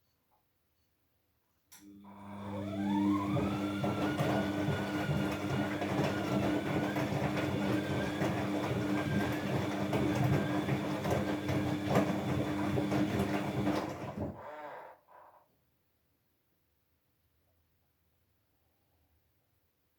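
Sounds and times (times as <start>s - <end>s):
washing machine motor whine: 1.8s - 14.8s.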